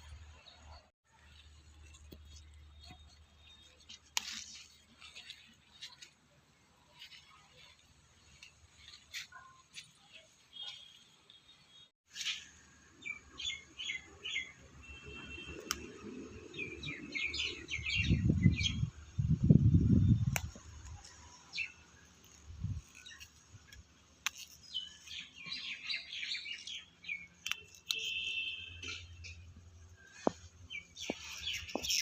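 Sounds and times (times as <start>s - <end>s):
small birds chirping: 6.8s - 32.0s.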